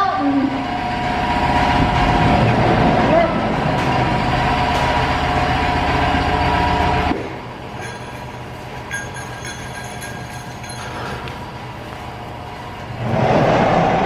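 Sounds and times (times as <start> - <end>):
faint high ringing tones: 7.7 - 11.7.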